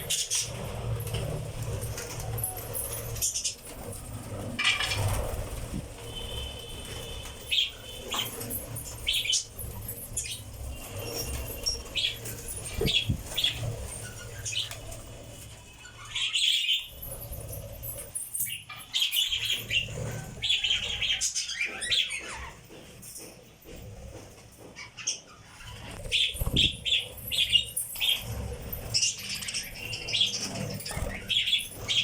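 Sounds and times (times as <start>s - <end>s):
lovebirds chirping: 4.6s - 22.6s, 24.8s - 32.0s.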